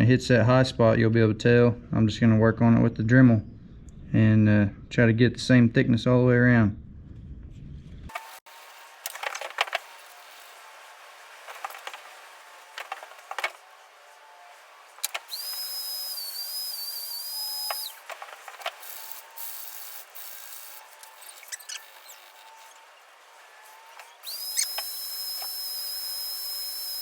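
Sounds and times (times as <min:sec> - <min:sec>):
rotary tool scratchy sanding: 0:08.1 - 0:27.0
clicks: 0:11.5 - 0:13.7, 0:15.0 - 0:27.0
high-pitched tool whine: 0:14.3 - 0:27.0.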